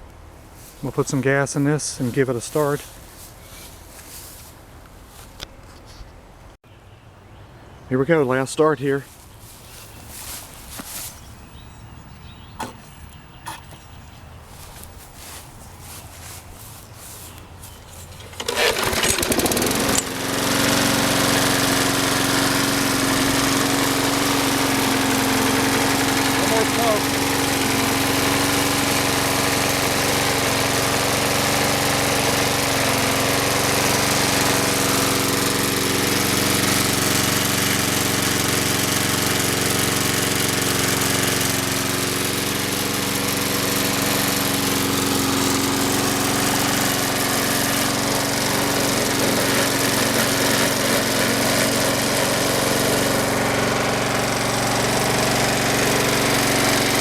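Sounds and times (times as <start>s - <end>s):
push mower engine running: 9.7s - 12.7s, 14.5s - 57.0s.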